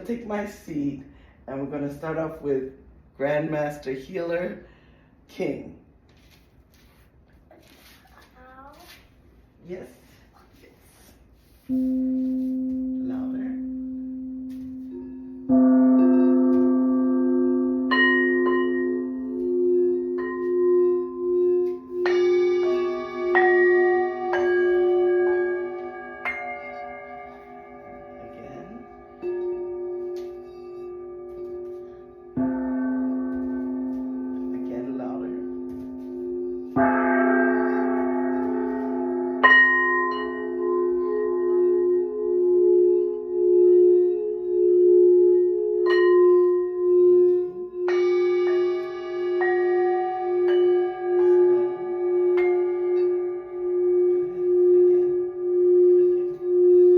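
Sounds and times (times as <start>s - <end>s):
singing bowls ringing: 11.6s - 56.9s.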